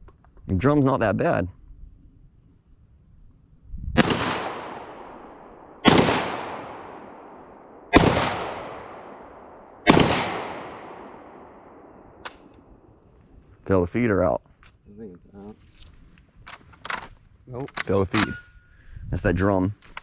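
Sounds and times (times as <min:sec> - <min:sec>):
shotgun shots with echo: 0:04.0 - 0:12.4
gun click: 0:12.2 - 0:12.7.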